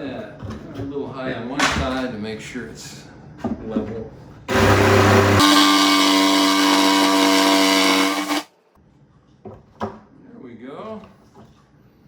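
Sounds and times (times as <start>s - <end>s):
power tool motor whining: 4.5s - 8.5s.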